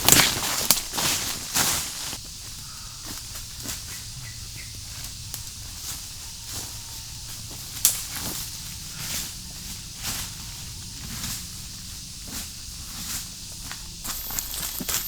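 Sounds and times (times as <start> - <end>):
footsteps through leaf litter: 0.0 - 2.4, 5.6 - 15.0
undergrowth rustling: 0.0 - 15.0.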